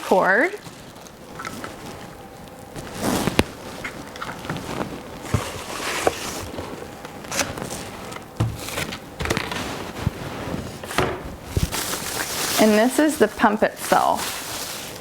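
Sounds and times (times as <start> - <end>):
packaging rustling: 0.6 - 15.0
parts being handled: 3.3 - 15.0.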